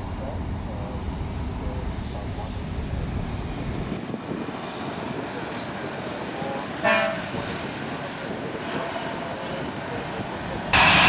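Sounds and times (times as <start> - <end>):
distant jet engines rushing: 0.0 - 11.0.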